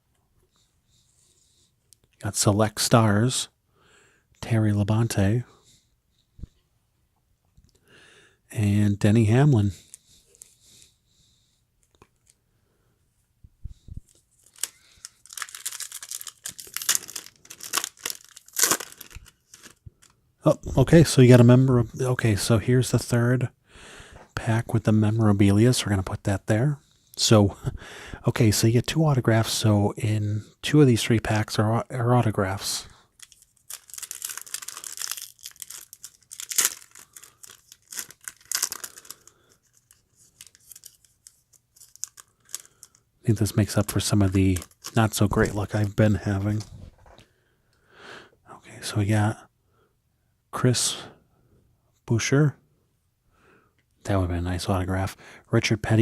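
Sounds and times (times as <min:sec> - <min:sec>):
wrapper tearing and crinkling: 0:14.4 - 0:20.1, 0:33.2 - 0:43.0, 0:43.7 - 0:45.9.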